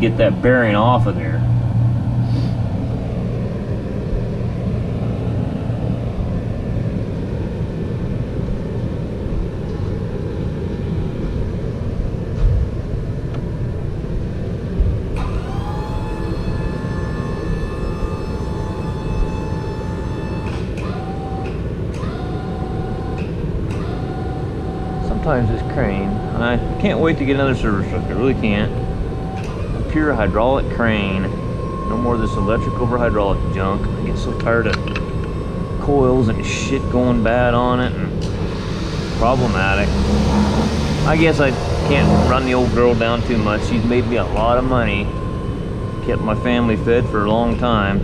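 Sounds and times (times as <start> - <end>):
steady low rumble: 0.0 - 48.0
hydraulic pump motor whining: 15.0 - 48.0.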